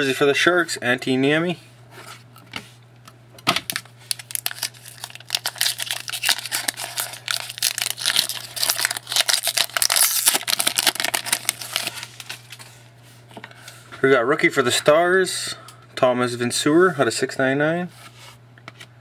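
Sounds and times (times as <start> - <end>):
foil wrapper tearing and crinkling: 3.7 - 12.6.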